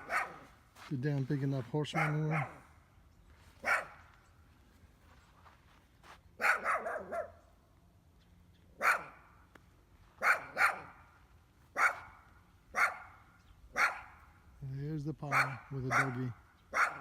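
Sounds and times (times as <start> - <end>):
dog barking: 0.0 - 0.5, 1.9 - 2.7, 3.6 - 4.0, 6.4 - 7.4, 8.8 - 9.3, 10.2 - 11.0, 11.7 - 14.2, 15.3 - 17.0.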